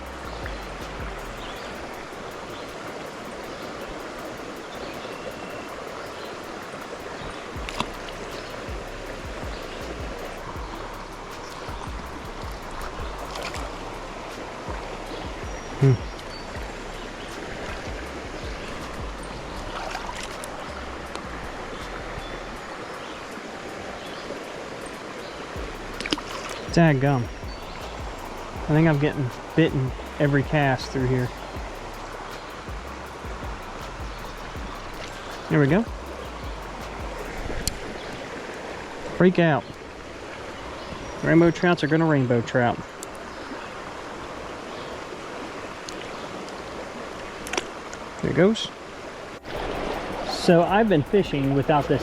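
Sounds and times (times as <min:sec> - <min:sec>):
faint clicks: 0:00.0 - 0:38.2, 0:42.9 - 0:43.2
river rushing: 0:00.0 - 0:52.0.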